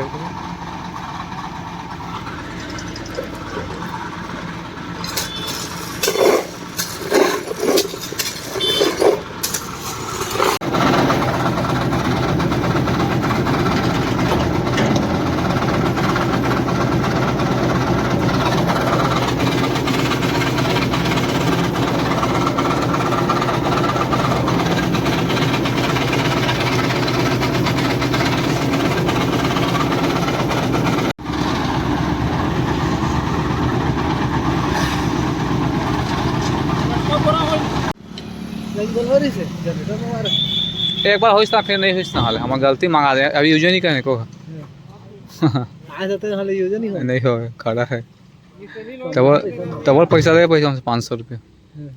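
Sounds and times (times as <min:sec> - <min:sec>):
machine engine running loudly: 0:00.0 - 0:38.0.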